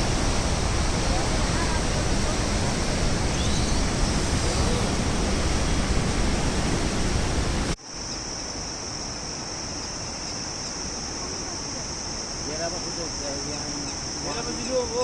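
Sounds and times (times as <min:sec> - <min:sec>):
rush of flood water: 0:00.0 - 0:07.8
high-pitched hiss: 0:00.0 - 0:15.0.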